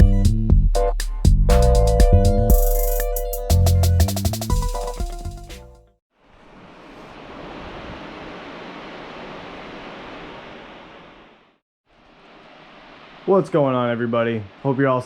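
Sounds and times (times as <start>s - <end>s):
intro music: 0.0s - 5.8s.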